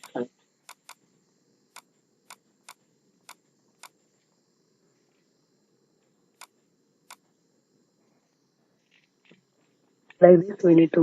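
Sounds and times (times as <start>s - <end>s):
computer mouse clicking: 0.0s - 1.0s, 1.7s - 4.0s, 6.4s - 7.3s
faint steady hiss: 0.0s - 11.0s.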